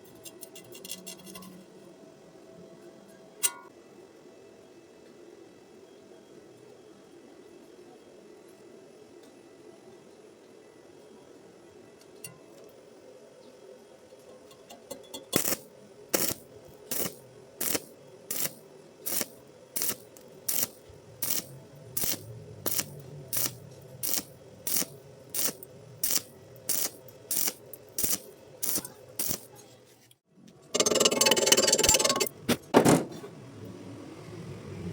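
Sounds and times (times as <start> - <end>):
welding arc crackling: 15.2 - 29.8.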